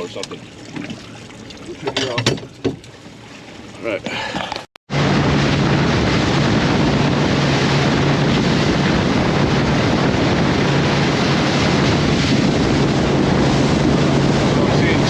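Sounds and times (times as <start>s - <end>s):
boat motor running: 0.0s - 15.0s
water rushing past hull: 0.0s - 15.0s
wind on microphone: 4.9s - 15.0s.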